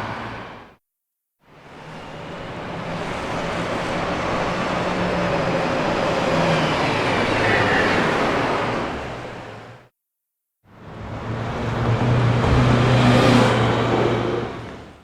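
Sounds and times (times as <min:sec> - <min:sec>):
bus driving past: 0:10.8 - 0:15.0.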